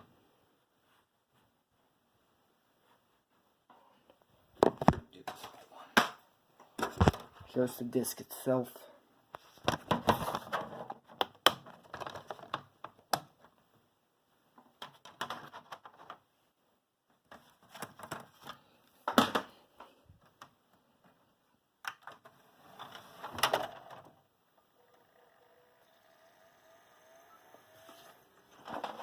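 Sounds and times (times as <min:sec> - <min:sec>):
plastic disc case clicks and rattles: 0:09.7 - 0:13.5, 0:14.8 - 0:16.2, 0:28.6 - 0:29.0.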